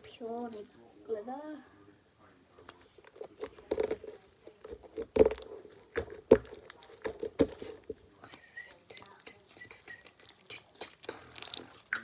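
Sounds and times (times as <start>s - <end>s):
slime squished by hand: 10.1s - 12.0s.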